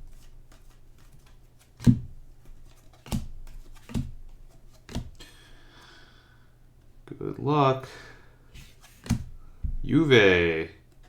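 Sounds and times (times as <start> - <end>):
cards flicked through by hand: 0.1 - 5.3, 8.6 - 9.4.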